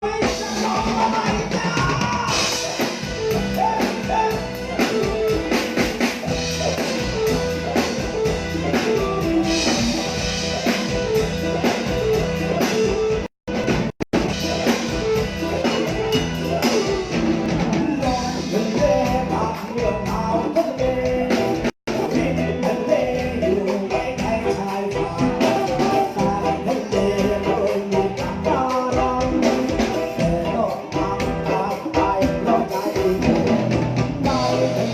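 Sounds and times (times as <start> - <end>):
drum beat: 0.0 - 20.4
live band music: 0.0 - 34.9
melodic lead line: 2.3 - 34.9.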